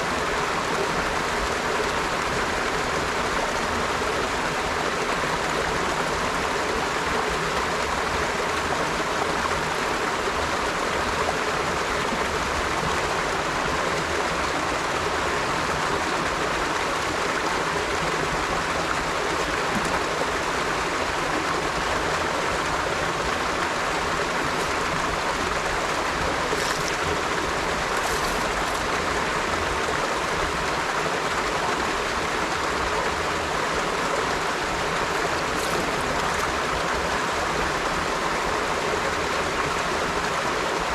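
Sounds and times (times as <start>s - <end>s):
river flowing: 0.0s - 40.9s.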